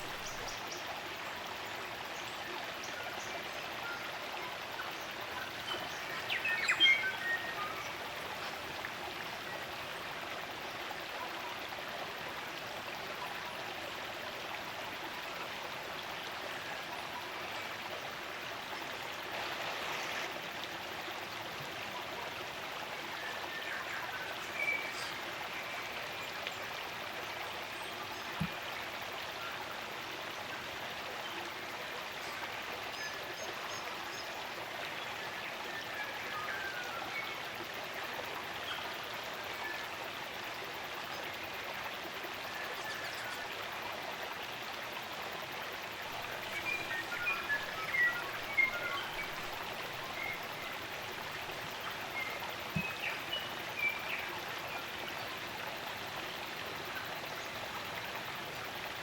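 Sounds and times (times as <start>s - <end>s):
stream running: 0.0s - 59.0s.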